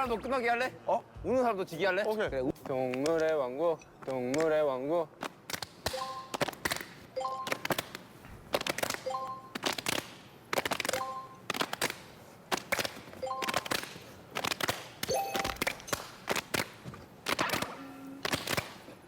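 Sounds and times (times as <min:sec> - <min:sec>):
hands clapping and slapping: 0:05.2 - 0:18.9
short beep-like tone: 0:05.9 - 0:06.3, 0:07.2 - 0:07.6, 0:11.0 - 0:11.4, 0:15.1 - 0:15.6.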